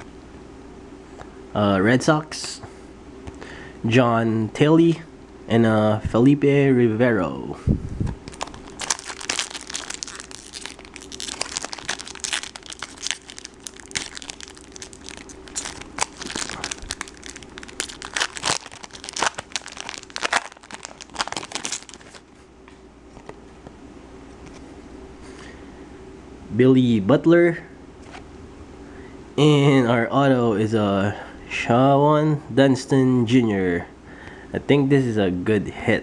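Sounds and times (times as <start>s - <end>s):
foil wrapper crinkling and tearing: 8.1s - 22.3s.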